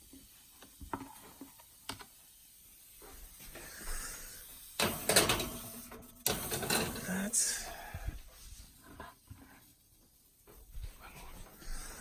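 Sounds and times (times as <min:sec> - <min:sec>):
oven handling clicks and taps: 0:04.8 - 0:07.1.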